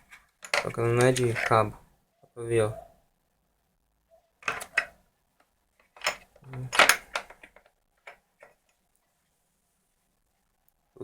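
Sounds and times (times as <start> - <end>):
metal tools clicking and clattering: 6.0 - 8.2.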